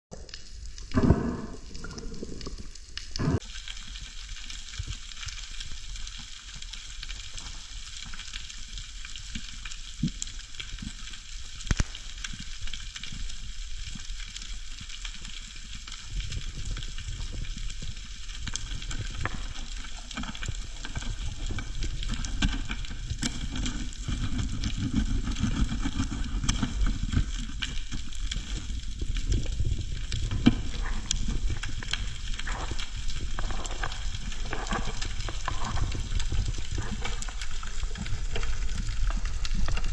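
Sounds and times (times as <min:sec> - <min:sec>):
low underwater rumble: 0:00.2 - 0:04.0, 0:15.6 - 0:39.9
underwater crackling hiss: 0:00.3 - 0:39.9.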